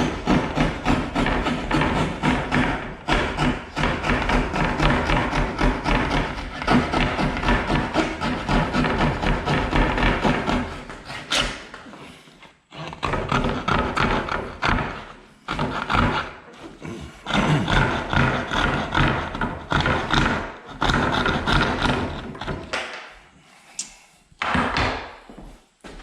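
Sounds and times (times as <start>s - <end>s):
coping saw cutting wood: 0.0s - 11.7s, 13.0s - 22.8s.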